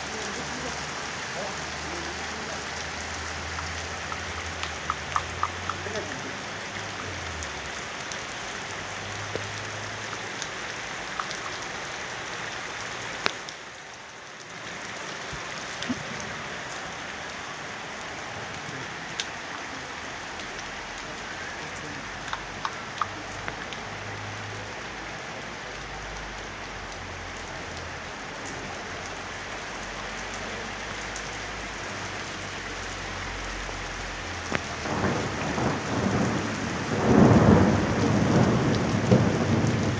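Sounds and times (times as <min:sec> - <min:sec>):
steady rain falling: 0:00.0 - 0:39.9
low rumble of thunder: 0:34.7 - 0:39.9.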